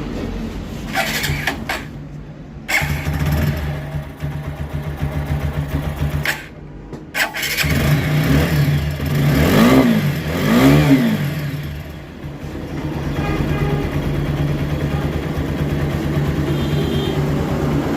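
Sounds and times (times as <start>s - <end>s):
motorcycle engine idling and revving: 0.0s - 17.9s.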